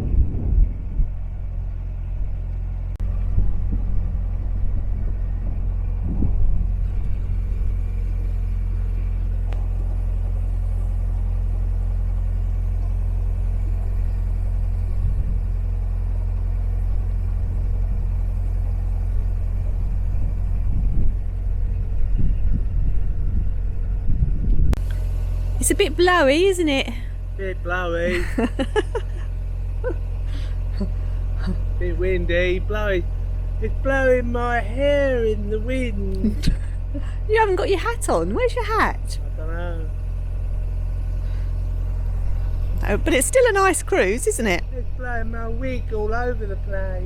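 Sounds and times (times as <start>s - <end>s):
wind gusting on microphone: 0.0s - 1.5s, 3.1s - 8.0s, 19.0s - 24.8s
diesel engine humming: 0.0s - 47.0s.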